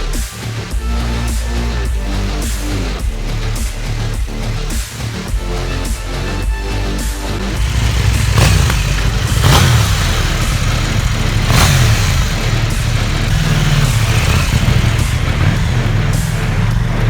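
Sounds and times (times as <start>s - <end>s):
motorcycle engine revving: 0.0s - 17.0s
rushes of noise: 7.4s - 17.0s.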